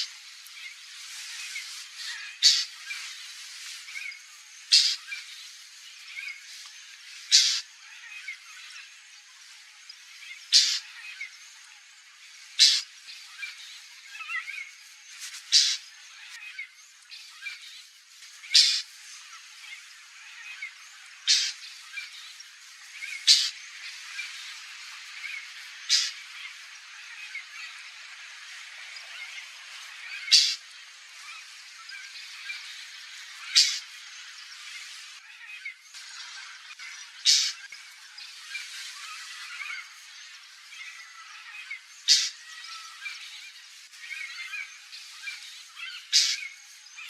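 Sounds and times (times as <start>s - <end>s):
bird harsh rasping calls: 2.1s - 2.8s, 4.7s - 5.0s, 7.3s - 7.6s, 10.5s - 10.8s, 12.6s - 12.8s, 15.5s - 15.8s, 18.5s - 18.8s, 21.2s - 21.6s, 23.1s - 23.6s, 25.9s - 26.2s, 30.2s - 30.6s, 33.5s - 33.8s, 37.2s - 37.6s, 42.1s - 42.4s
bird giving harsh calls: 7.3s - 7.6s.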